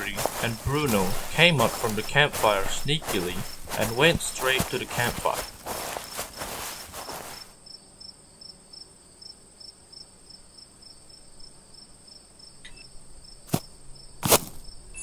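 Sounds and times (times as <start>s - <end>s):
rustling noise: 0.0s - 7.6s
crickets chirping: 0.0s - 15.0s.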